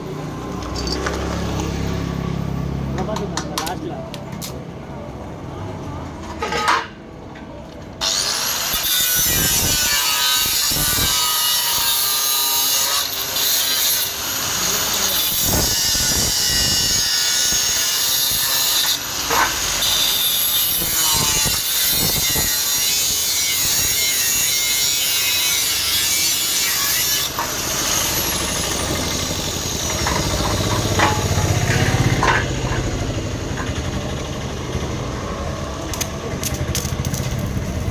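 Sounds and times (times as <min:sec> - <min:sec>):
power cutting tool whining: 0:08.0 - 0:34.9.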